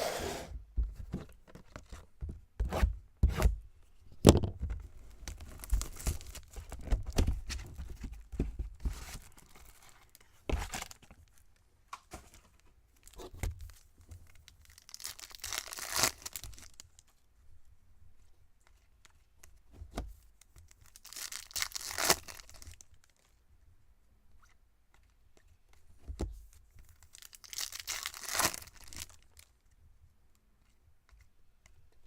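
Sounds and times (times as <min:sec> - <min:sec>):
wrapper rustle: 0:14.6 - 0:16.8, 0:20.8 - 0:23.2, 0:27.0 - 0:29.5
card pack wrappers ripping: 0:14.7 - 0:16.8, 0:21.0 - 0:22.7, 0:27.2 - 0:29.2.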